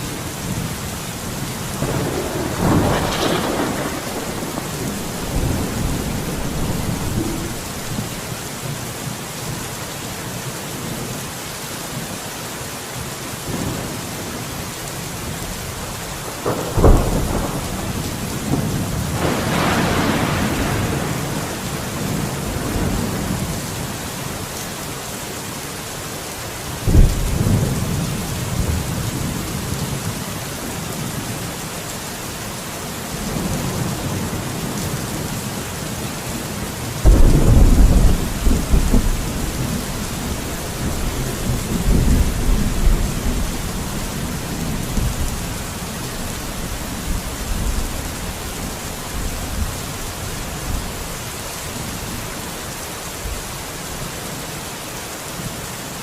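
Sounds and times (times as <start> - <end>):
thunder rumbling: 0.0 - 8.4, 16.3 - 23.6, 26.8 - 29.9, 37.0 - 51.1
heavy rain: 0.0 - 56.0
sharp cracks of thunder: 1.8 - 8.1, 16.4 - 23.4, 26.8 - 28.8, 37.0 - 45.6.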